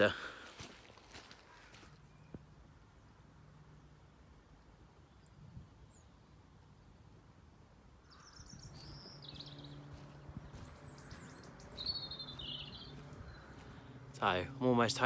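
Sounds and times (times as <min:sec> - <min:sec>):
small birds calling: 0:08.0 - 0:14.0.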